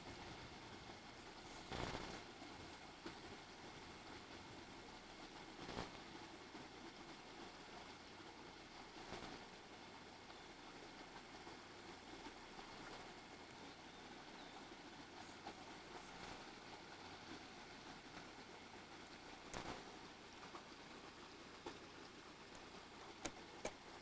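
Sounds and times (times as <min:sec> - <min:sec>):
faint steady hiss: 0:00.0 - 0:24.0
soft ticks: 0:19.4 - 0:19.8, 0:22.5 - 0:24.0.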